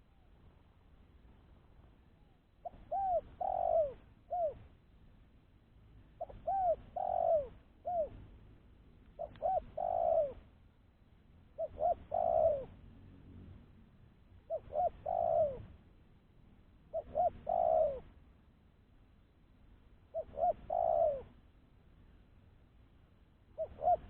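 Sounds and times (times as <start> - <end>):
dove cooing: 2.2 - 4.7, 6.2 - 8.2, 9.2 - 10.5, 11.5 - 12.8, 14.4 - 15.8, 16.9 - 18.2, 20.1 - 21.4, 23.6 - 24.0.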